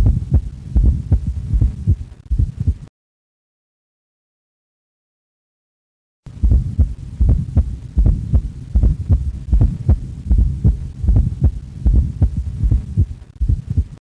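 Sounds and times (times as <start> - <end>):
heartbeat through a stethoscope: 0.0 - 2.9, 6.3 - 14.0.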